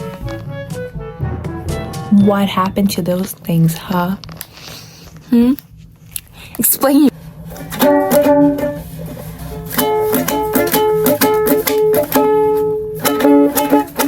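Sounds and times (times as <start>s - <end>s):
ukulele strumming chords: 0.0s - 3.2s, 7.5s - 14.0s.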